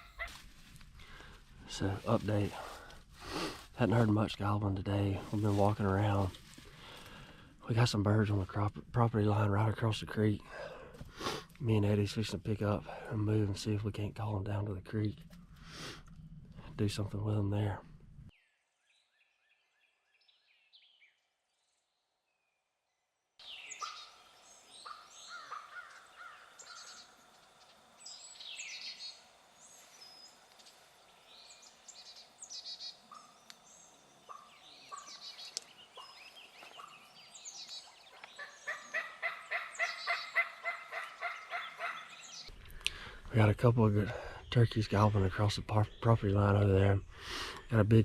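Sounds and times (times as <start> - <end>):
birds chirping and calling: 23.4 - 48.0
turkey gobbling: 24.8 - 27.0, 34.3 - 37.1, 38.1 - 42.4.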